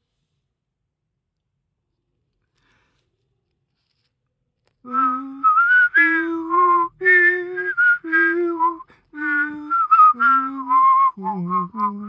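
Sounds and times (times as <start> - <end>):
person whistling a chime melody: 4.9 - 12.0
person voicing a low note: 9.2 - 12.0.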